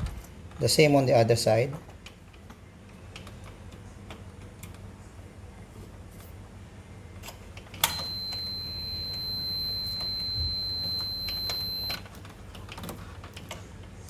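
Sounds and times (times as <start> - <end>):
multimeter steady high beep: 7.8 - 12.0
probe clicks: 7.8 - 12.0.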